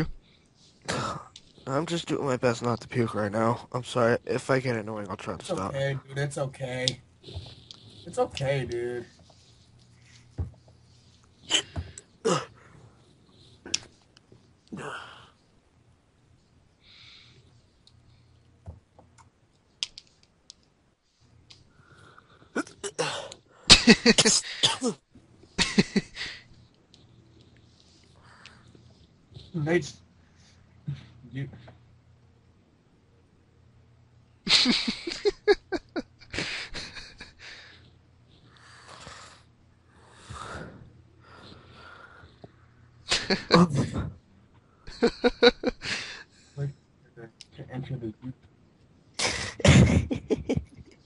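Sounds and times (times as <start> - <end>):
faint clicks: 17.8 - 20.8
heavy gasping breaths: 36.3 - 42.8, 45.7 - 46.6.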